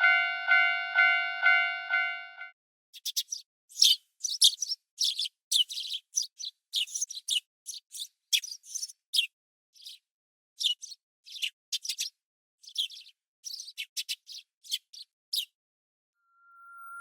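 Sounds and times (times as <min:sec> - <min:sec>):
small birds chirping: 0:03.0 - 0:15.6.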